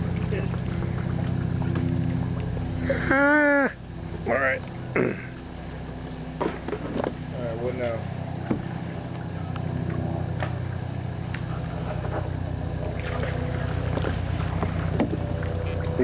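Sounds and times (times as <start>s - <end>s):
small motor humming: 0.0s - 16.0s
light knocks: 8.4s - 8.7s.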